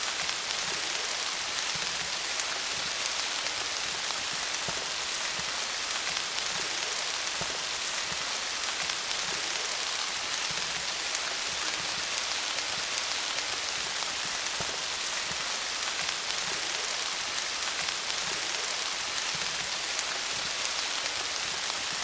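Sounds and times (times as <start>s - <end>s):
rain falling on leaves: 0.0s - 22.0s.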